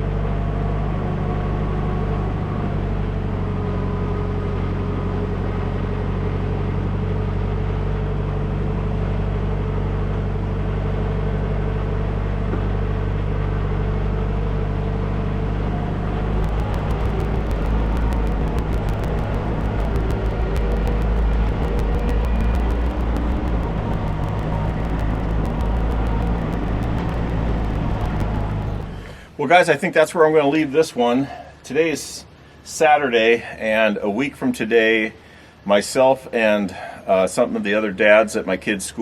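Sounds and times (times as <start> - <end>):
tractor engine running: 0.0 - 29.4
wood chipper crackling: 10.1 - 29.3.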